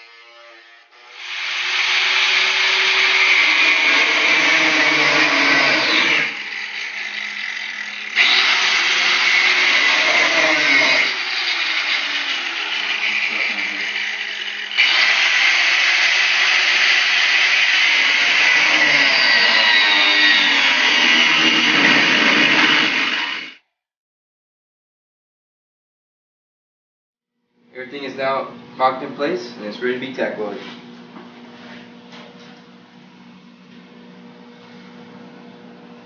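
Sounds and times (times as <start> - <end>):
power tool cutting steel whine: 0.0 - 23.6.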